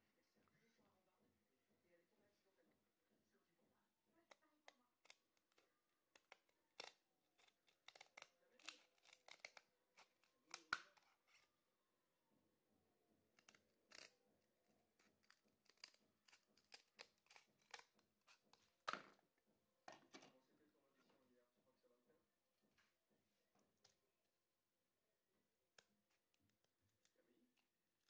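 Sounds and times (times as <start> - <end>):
scissors snipping: 5.0 - 11.4, 13.4 - 14.2, 15.0 - 18.9.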